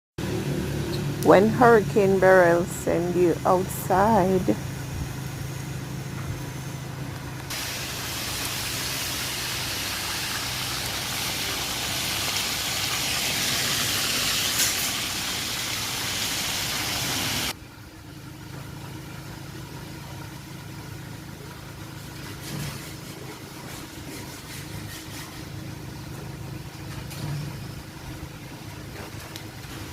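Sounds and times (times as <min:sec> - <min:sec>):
steady low hum: 0:00.2 - 0:14.1
fish sizzling in hot oil: 0:07.5 - 0:17.5.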